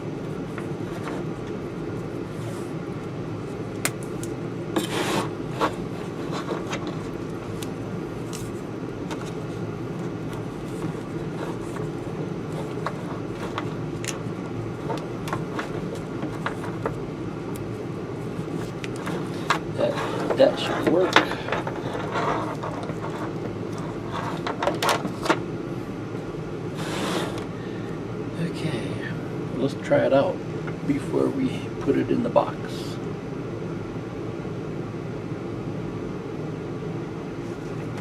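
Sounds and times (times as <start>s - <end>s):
steady low hum: 0.0s - 38.0s
tape rubbing and crackling: 0.2s - 2.8s, 3.5s - 25.4s.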